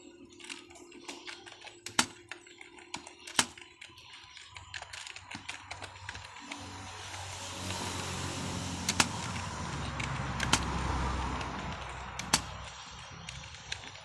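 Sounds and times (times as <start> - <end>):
sharp clicks: 0.4 - 6.6, 8.8 - 14.0
passing vehicle rumble: 6.5 - 13.8.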